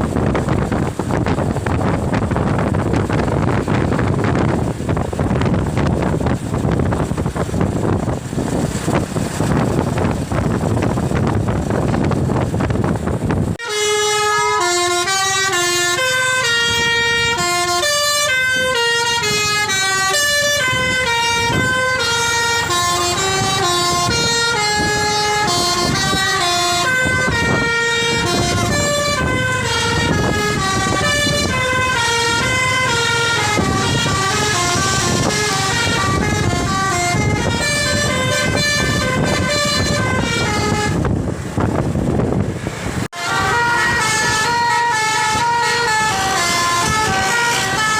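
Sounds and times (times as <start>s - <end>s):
wind rushing: 0.0s - 13.6s, 15.9s - 47.9s
traffic: 0.0s - 47.9s
bus horn playing a tune: 13.6s - 41.5s, 43.1s - 47.9s.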